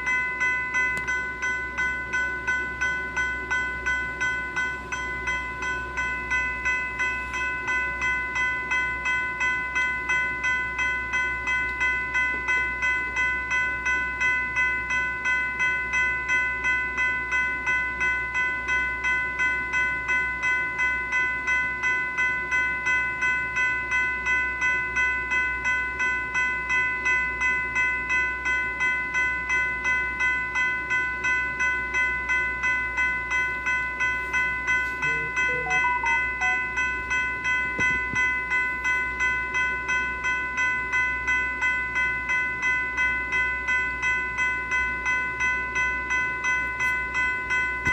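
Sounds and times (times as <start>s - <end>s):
electronic bell ringing: 31.7s - 40.5s.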